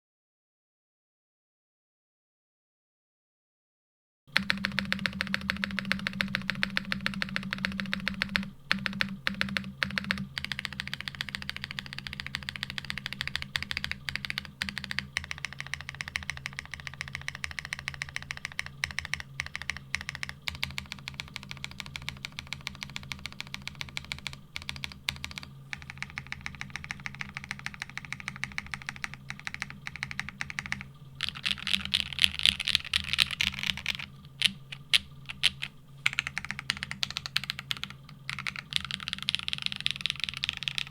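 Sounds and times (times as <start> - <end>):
typing on mechanical keyboard: 4.3 - 40.9.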